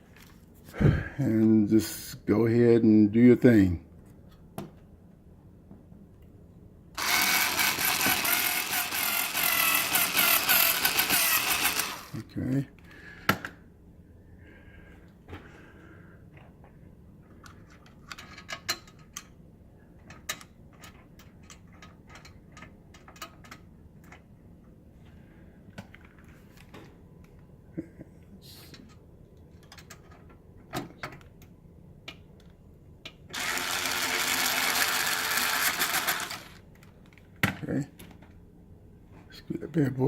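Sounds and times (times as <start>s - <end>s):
electric screwdriver motor: 7.0s - 12.2s, 33.3s - 36.6s.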